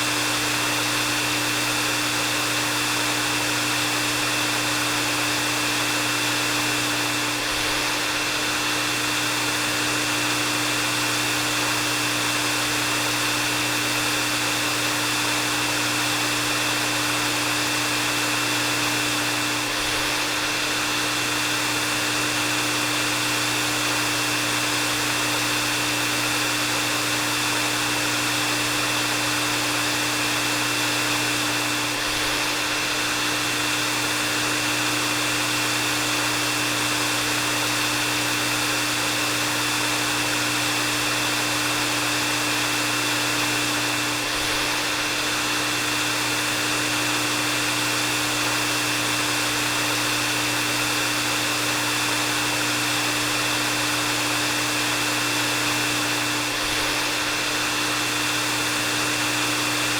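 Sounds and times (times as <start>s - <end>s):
hair dryer running: 0.0s - 59.9s.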